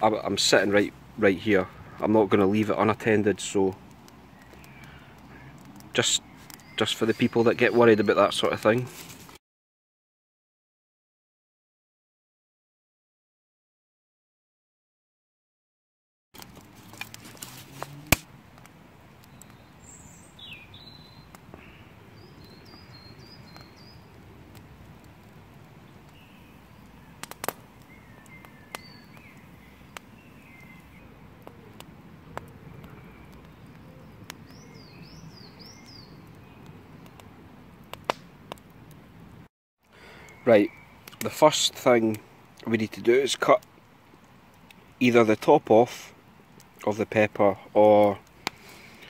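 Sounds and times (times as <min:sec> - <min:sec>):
small birds chirping: 0:00.0 - 0:08.9, 0:19.0 - 0:37.4, 0:39.9 - 0:45.9, 0:46.6 - 0:49.0
low outdoor background: 0:00.0 - 0:09.4, 0:16.4 - 0:49.0
sharp snaps: 0:17.8 - 0:19.6, 0:27.2 - 0:30.1, 0:35.8 - 0:38.8, 0:41.0 - 0:41.4, 0:47.9 - 0:49.0.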